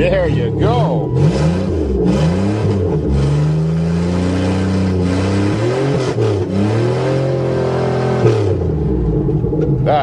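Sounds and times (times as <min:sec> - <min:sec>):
car engine revving: 0:00.0 - 0:10.0.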